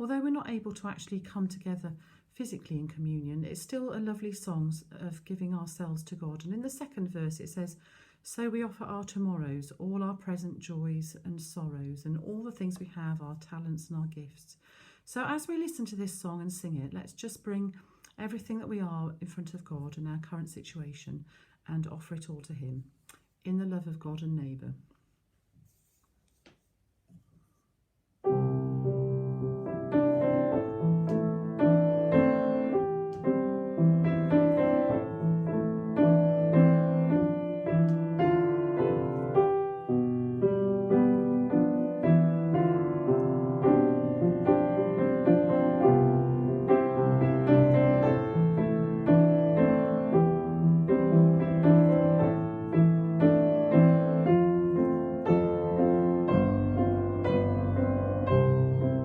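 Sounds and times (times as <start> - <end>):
slow hymn tune on piano: 28.3 - 59.0.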